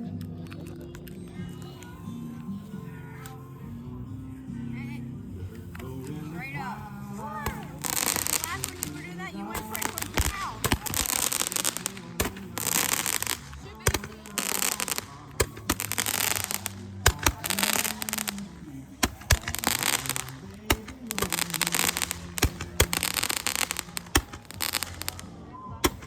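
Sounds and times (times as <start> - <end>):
fireworks hissing and crackling: 5.5 - 26.0
fireworks popping and banging: 5.6 - 26.0.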